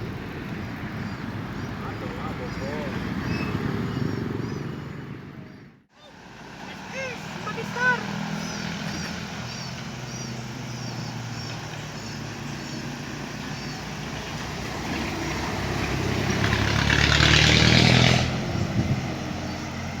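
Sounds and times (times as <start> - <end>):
bus passing by: 0.0 - 20.0
steady engine hum: 0.0 - 20.0.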